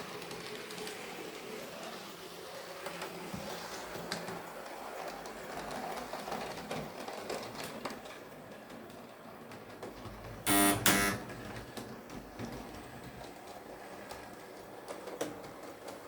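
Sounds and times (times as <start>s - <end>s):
train tooting: 10.5s - 11.4s.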